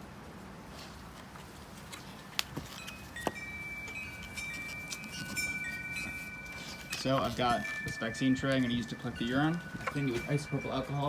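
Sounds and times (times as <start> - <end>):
wind chimes ringing: 2.7 - 11.0.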